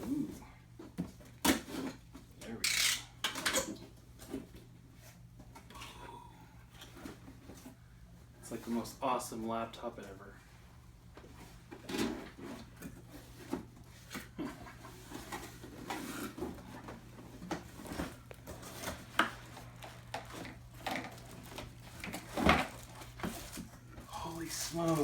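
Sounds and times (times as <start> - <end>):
cardboard packaging rustling: 11.6 - 25.0.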